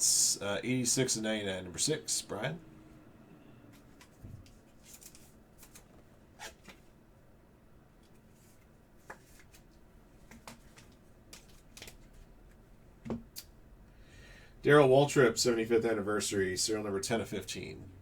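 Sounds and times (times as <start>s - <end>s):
cards rustling and sliding: 3.7s - 6.9s, 8.0s - 12.3s.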